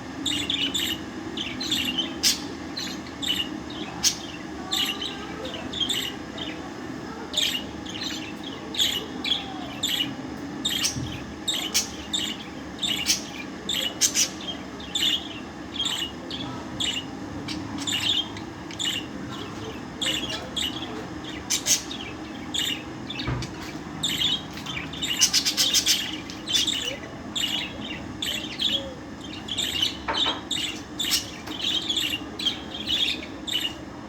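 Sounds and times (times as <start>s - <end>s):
steady low hum: 0.0s - 34.0s
budgerigar chirping: 24.0s - 33.8s.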